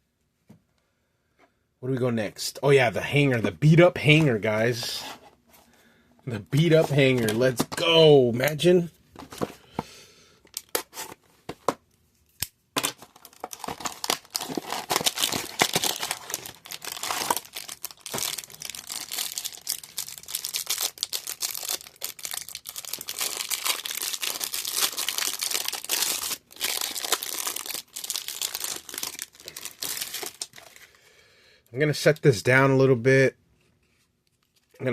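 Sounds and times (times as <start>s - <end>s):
plastic wrapper tearing and crinkling: 12.3s - 30.9s.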